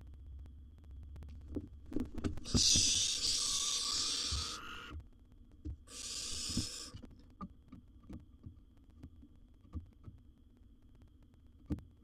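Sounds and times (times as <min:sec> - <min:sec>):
barn owl hissing: 0:02.4 - 0:05.0, 0:05.9 - 0:07.0.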